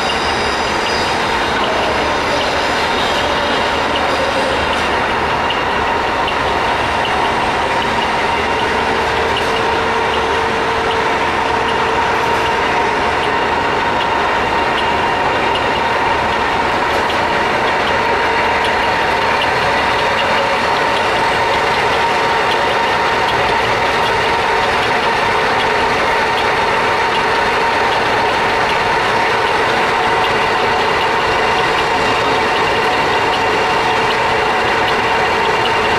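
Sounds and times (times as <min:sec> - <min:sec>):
lathe gear noise with whine: 0:00.0 - 0:35.9.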